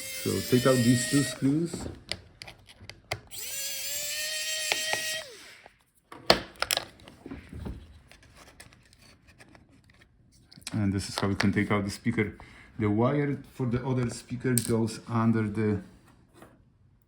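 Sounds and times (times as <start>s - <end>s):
electric screwdriver whine: 0.0s - 1.9s, 3.3s - 5.7s.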